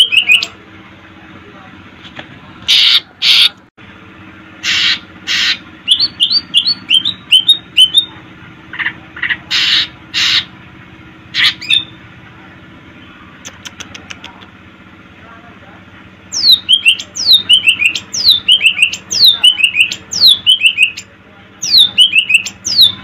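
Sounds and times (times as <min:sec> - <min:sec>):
bird harsh rasping calls: 0:02.7 - 0:03.6, 0:04.6 - 0:08.1, 0:08.7 - 0:10.6, 0:11.3 - 0:12.0, 0:16.3 - 0:23.0.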